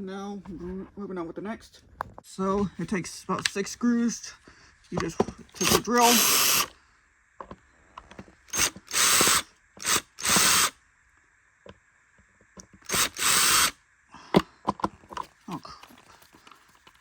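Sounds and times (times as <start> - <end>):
power drill spinning: 5.5 - 6.8, 8.5 - 10.8, 12.8 - 13.8.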